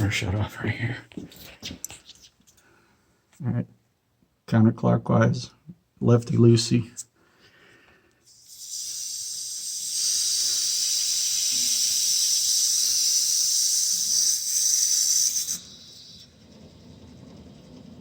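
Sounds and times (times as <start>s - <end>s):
water hissing through a valve: 8.2s - 18.0s.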